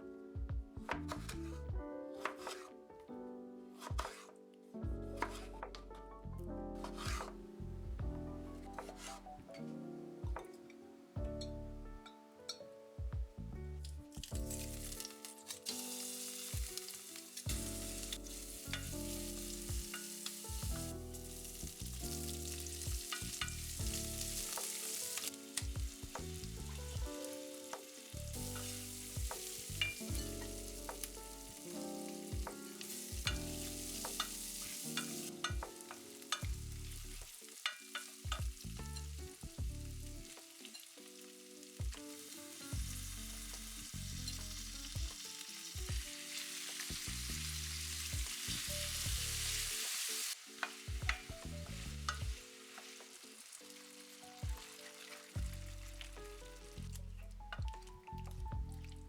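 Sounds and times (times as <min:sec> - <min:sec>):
utensil scraping a pan: 0:02.2 - 0:02.8, 0:03.9 - 0:04.4, 0:06.8 - 0:07.3, 0:08.7 - 0:09.2
vegetables sizzling in oil: 0:14.2 - 0:56.9.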